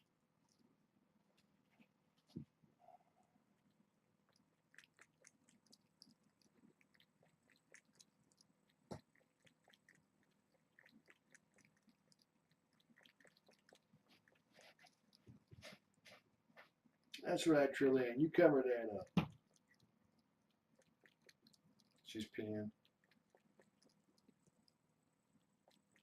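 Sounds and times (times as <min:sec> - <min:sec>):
kittens clicking and scratching: 0:04.3 - 0:17.2.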